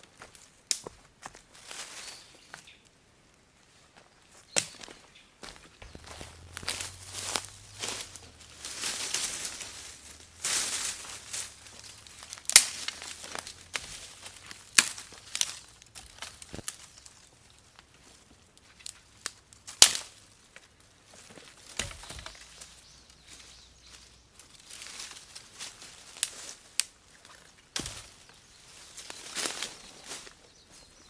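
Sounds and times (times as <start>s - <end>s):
twigs and leaves crunching: 4.3s - 31.0s.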